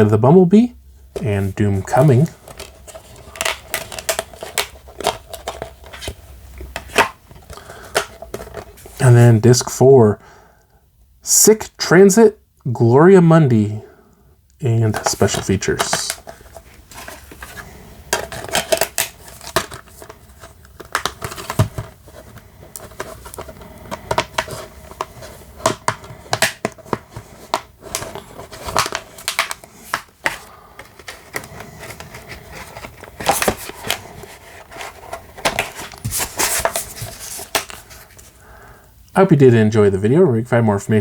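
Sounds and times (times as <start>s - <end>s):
plastic dvd case clicks and snaps: 2.5s - 8.7s, 18.1s - 21.9s, 22.8s - 24.6s, 25.6s - 34.0s.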